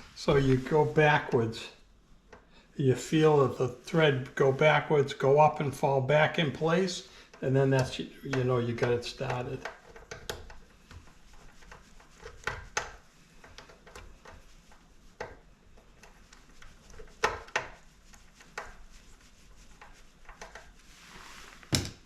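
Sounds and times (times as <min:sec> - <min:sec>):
scraping rub: 0:00.0 - 0:01.5, 0:16.0 - 0:21.7
screwdriver clicks and knocks: 0:09.2 - 0:10.6.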